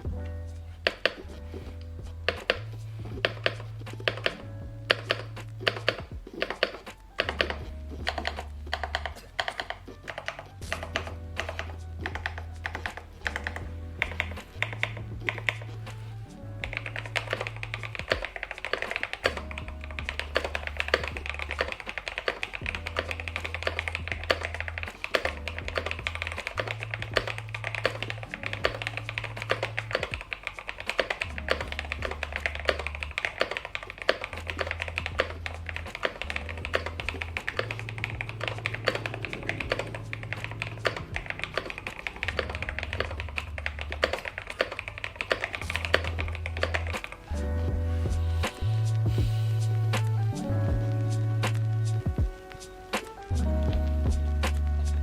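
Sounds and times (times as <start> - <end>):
background music with bass line: 0.0 - 18.3, 19.2 - 30.4, 31.2 - 33.2, 33.8 - 44.2, 45.3 - 55.0
mechanical keyboard typing: 0.8 - 1.3, 2.2 - 15.7, 16.6 - 47.5.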